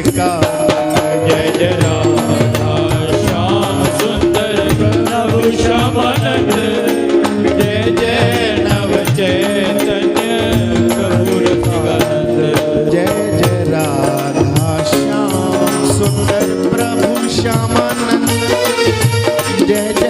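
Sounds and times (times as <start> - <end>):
held instrumental notes: 0.0 - 20.0
percussion strokes: 0.0 - 20.0.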